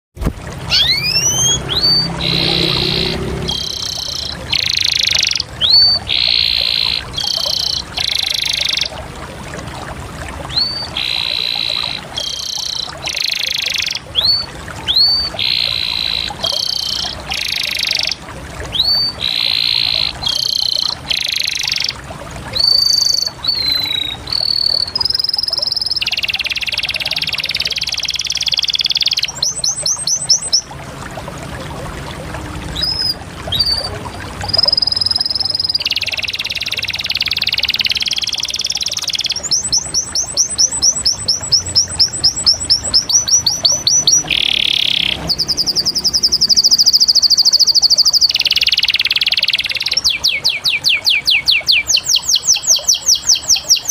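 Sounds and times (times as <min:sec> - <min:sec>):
canary singing trills: 0:00.7 - 0:09.0, 0:10.5 - 0:22.0, 0:22.6 - 0:30.7, 0:32.8 - 0:53.9.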